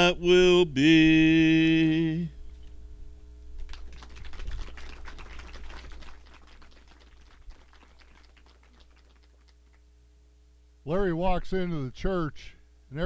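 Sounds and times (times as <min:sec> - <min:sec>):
small group applauding: 0:03.6 - 0:09.8.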